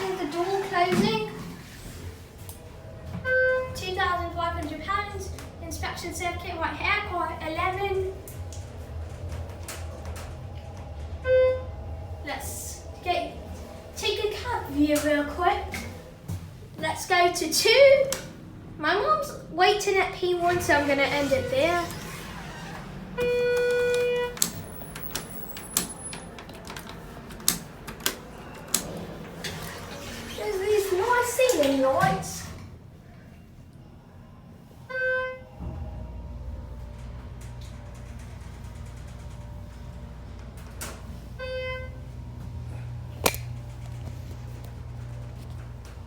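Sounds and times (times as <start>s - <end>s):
elevator hum: 0.0s - 46.0s
sharp click: 43.2s - 43.5s.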